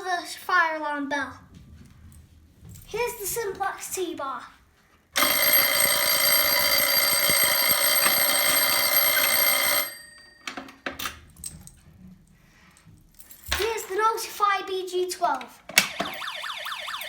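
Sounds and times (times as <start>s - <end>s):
fire alarm buzzing tone: 5.2s - 10.2s, 15.8s - 17.0s.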